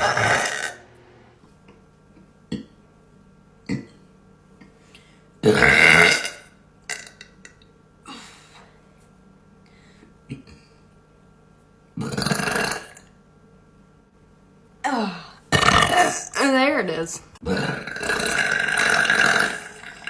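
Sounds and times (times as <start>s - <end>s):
woman burping loudly: 0.0s - 1.0s, 5.4s - 7.6s, 12.0s - 13.1s, 14.8s - 16.6s, 17.4s - 20.0s.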